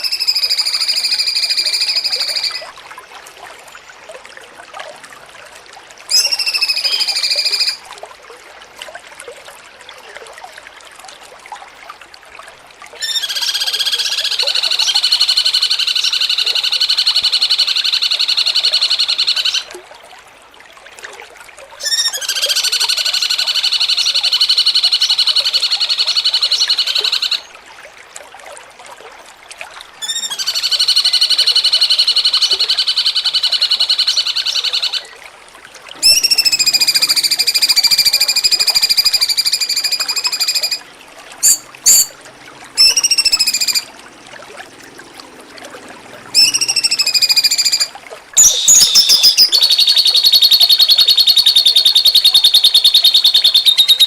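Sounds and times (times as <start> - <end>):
fast buzzing bird trill: 41.4 - 42.2, 46.4 - 54.0.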